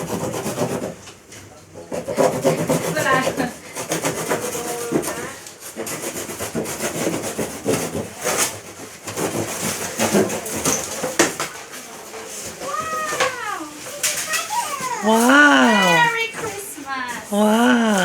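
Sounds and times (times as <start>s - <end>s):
packaging scraping and rubbing: 1.8s - 18.0s
background voices: 15.0s - 18.0s.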